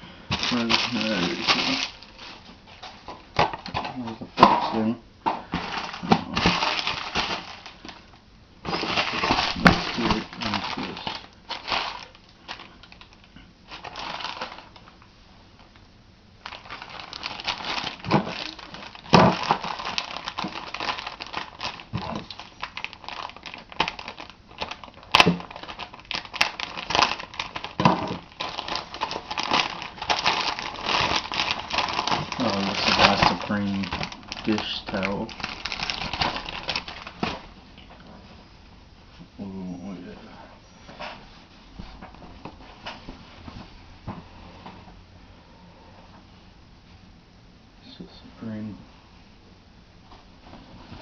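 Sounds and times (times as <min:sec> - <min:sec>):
packaging crinkling and rustling: 0:00.3 - 0:04.2, 0:05.4 - 0:15.7, 0:16.4 - 0:38.1.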